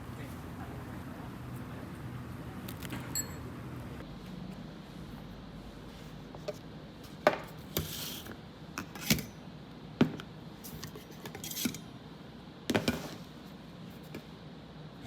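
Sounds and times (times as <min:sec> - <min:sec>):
dishes and utensils clinking: 0:03.0 - 0:03.5.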